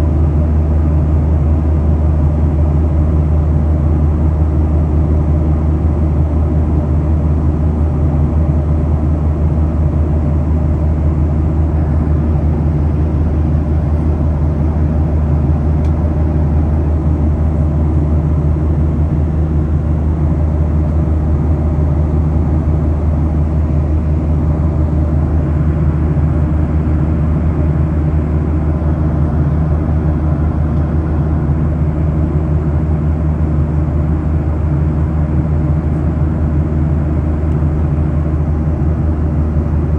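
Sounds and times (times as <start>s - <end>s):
jet engine cabin drone: 0.0s - 39.9s.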